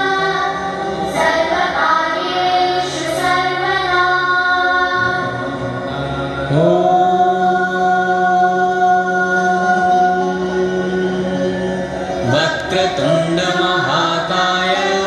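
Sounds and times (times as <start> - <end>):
children singing a prayer in chorus: 0.0 - 5.6.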